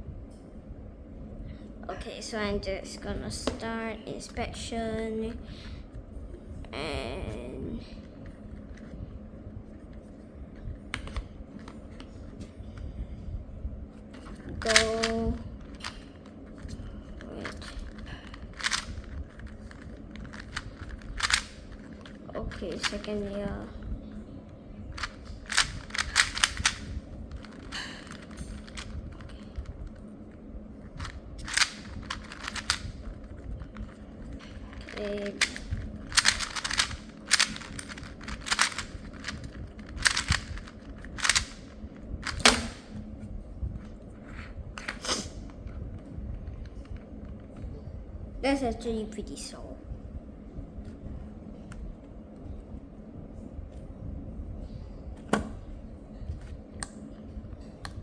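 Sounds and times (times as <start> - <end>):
plastic puzzle cube clicking: 14.4 - 16.0, 17.4 - 23.4, 25.0 - 29.6, 31.0 - 42.9.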